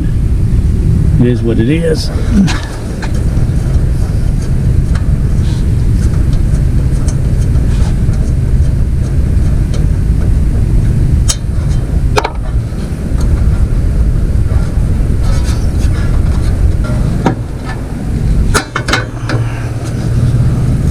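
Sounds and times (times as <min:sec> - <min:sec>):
steady low rumble: 0:00.0 - 0:20.9.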